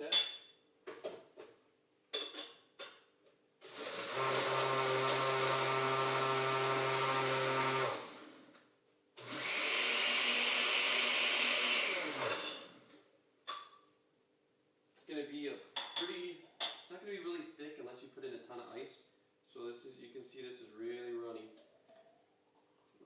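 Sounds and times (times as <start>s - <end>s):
blender running: 3.6s - 8.6s, 9.2s - 12.9s.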